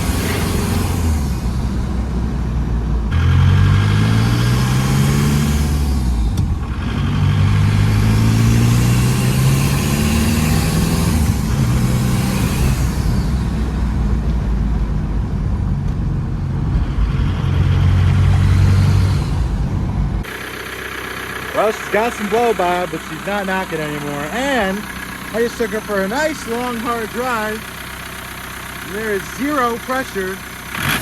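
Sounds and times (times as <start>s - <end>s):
diesel engine accelerating: 0.0s - 31.0s.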